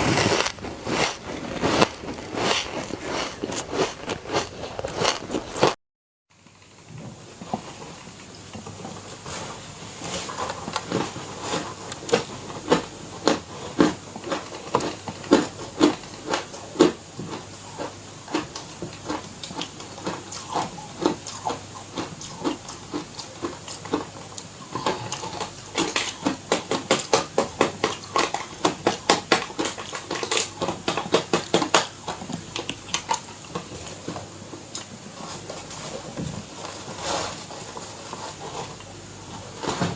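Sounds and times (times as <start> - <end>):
ice crunching while chewed: 0.0 - 5.8.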